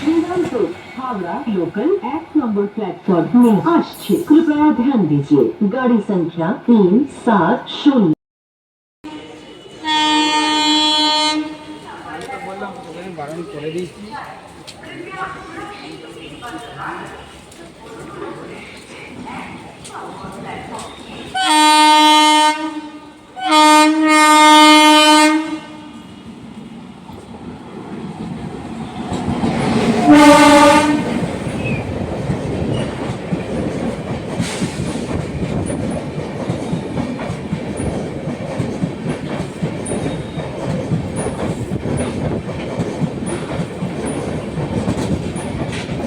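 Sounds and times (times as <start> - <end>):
train horn blasts: 9.0 - 12.0, 21.3 - 26.2, 30.0 - 31.2
train wheels clattering on rails: 28.0 - 46.0.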